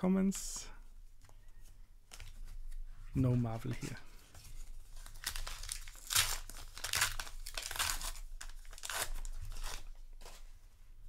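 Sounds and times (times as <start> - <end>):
paper wrapper crinkling and tearing: 4.5 - 10.4.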